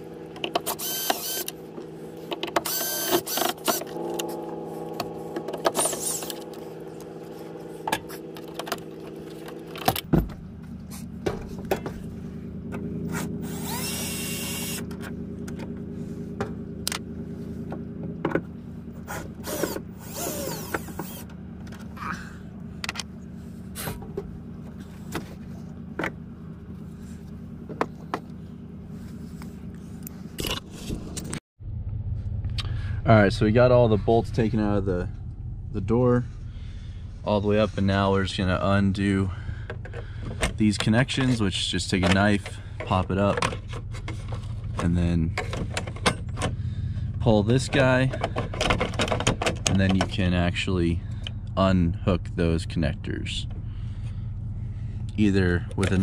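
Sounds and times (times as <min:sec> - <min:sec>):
steady low hum: 0:00.0 - 0:56.0
power driver whirring: 0:00.3 - 0:07.1, 0:13.0 - 0:15.7, 0:19.0 - 0:21.9.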